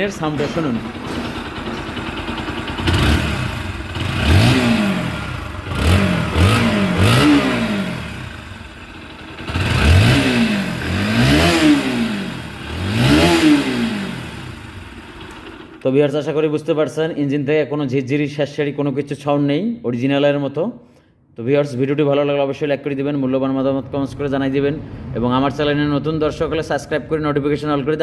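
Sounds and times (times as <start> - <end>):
motorcycle engine revving: 0.0 - 15.9.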